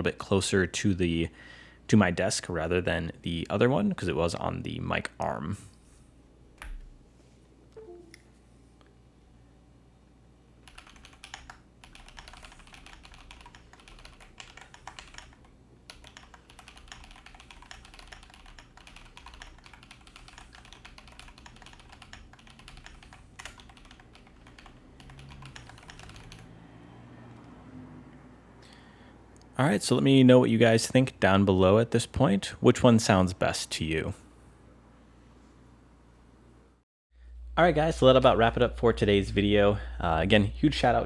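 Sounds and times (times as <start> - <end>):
fast keyboard typing: 10.6 - 26.5.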